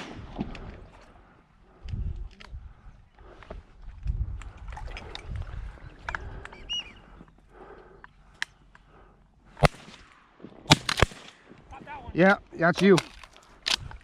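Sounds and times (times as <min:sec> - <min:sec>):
water sloshing and splashing: 0:00.0 - 0:07.2.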